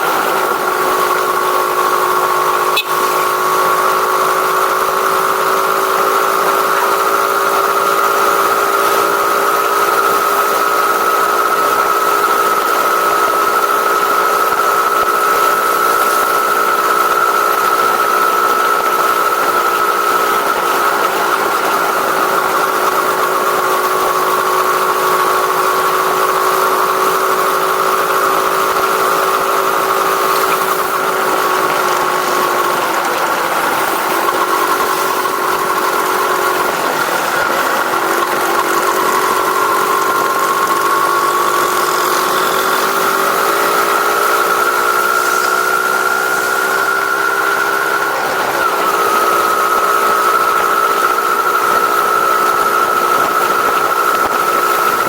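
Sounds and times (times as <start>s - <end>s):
vehicle engine running steadily: 0.0s - 55.0s.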